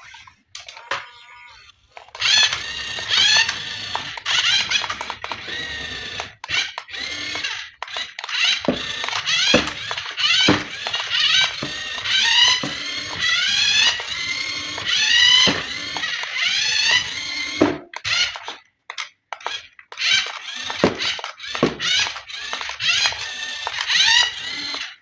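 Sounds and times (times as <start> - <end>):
toy car electric motor whining: 0.0 - 25.0
handling knocks and clicks: 1.9 - 16.4.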